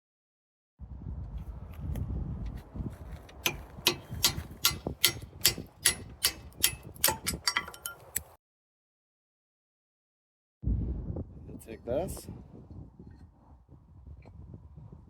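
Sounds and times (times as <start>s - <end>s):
low rumble of handling noise: 0.9s - 8.4s
metal lever parts clicking: 3.3s - 8.3s.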